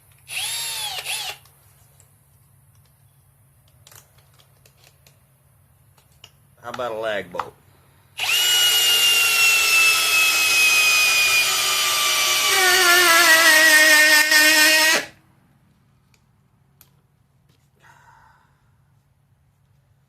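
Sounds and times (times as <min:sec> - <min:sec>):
hammer drill motor whine: 0:00.3 - 0:01.5, 0:08.2 - 0:15.2.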